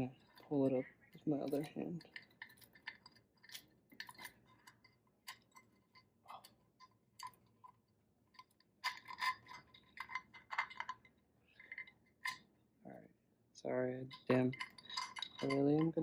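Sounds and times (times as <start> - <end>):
metal engine parts clinking: 0.1 - 12.5, 14.0 - 16.0.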